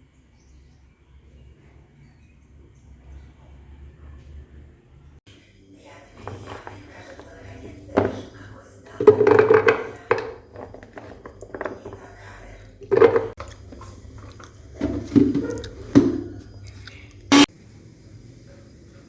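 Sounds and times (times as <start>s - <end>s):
household objects knocking and clattering: 6.2s - 8.4s, 9.0s - 16.5s.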